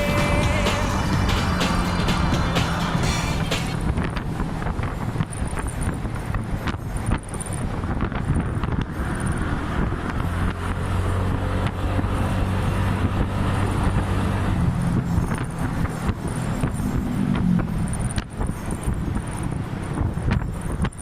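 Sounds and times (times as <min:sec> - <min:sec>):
motor scooter engine running: 0:00.0 - 0:07.6.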